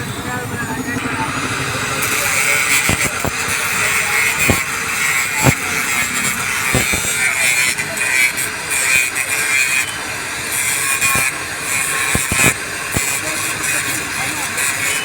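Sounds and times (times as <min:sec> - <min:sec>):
welding arc crackling hiss: 0:01.4 - 0:15.0
sharp clicks: 0:02.0 - 0:07.3, 0:11.1 - 0:11.4, 0:12.1 - 0:13.2.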